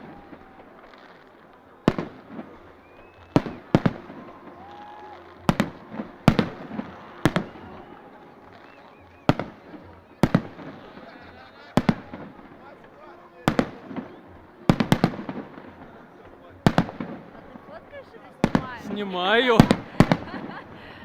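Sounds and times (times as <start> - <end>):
fireworks bangs: 0.0 - 21.0
fireworks crackling: 0.0 - 21.0.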